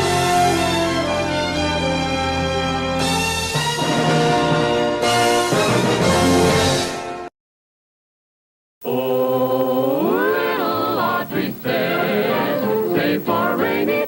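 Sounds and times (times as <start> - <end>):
vocal group singing with orchestra: 8.9 - 14.0.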